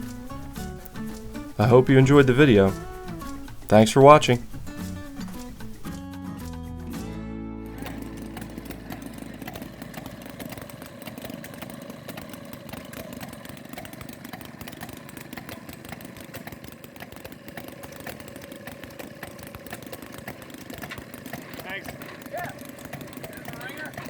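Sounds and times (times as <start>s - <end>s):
small gasoline engine running: 0.0s - 24.0s.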